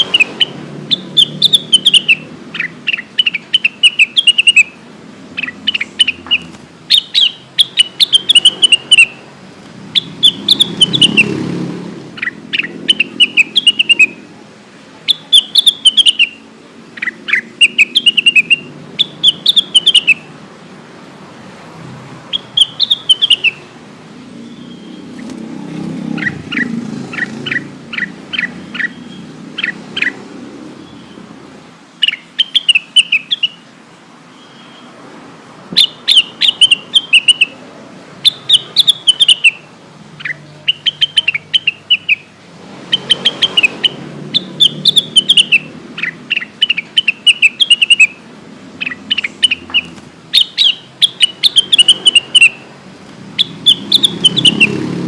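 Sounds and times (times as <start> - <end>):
bird whistling sharp notes: 6.9 - 9.2, 50.4 - 52.6.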